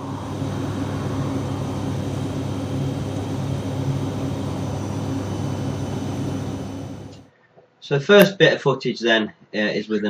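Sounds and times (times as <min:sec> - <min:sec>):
wide rushing noise: 0:00.0 - 0:07.2
mechanical drone: 0:00.0 - 0:07.3.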